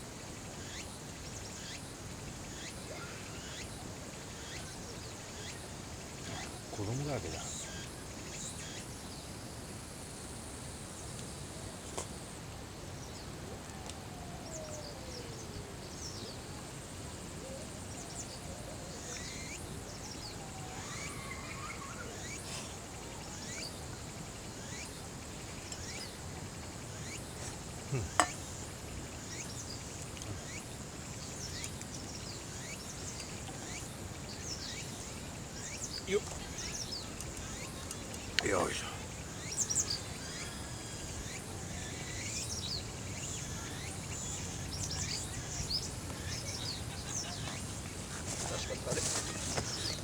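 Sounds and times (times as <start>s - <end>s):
high insect drone: 0.2s - 9.2s, 19.0s - 50.0s
falling birdcalls: 19.0s - 23.8s, 24.6s - 50.0s.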